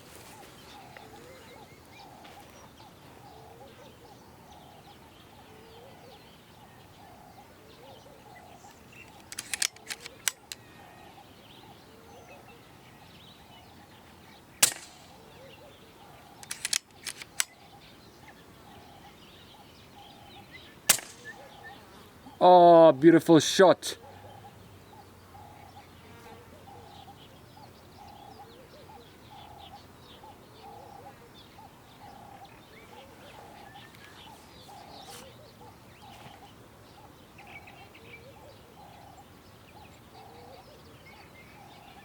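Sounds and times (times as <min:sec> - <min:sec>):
birds calling: 0:00.0 - 0:42.0
mechanical clicks: 0:09.1 - 0:10.6, 0:16.4 - 0:17.6, 0:20.9 - 0:21.3
suppressed air rifle shots: 0:09.1 - 0:10.6, 0:14.6 - 0:15.4, 0:16.4 - 0:17.6, 0:20.9 - 0:21.7.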